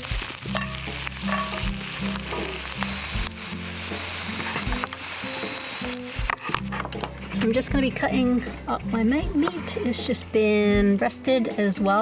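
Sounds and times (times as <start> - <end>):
potatoes sizzling in a pan: 0.0 - 6.7
background music: 0.0 - 12.0.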